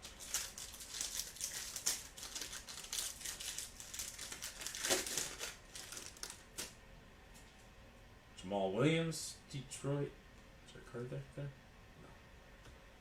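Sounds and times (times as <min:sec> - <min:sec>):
foil wrapper crinkling: 0:00.0 - 0:06.8.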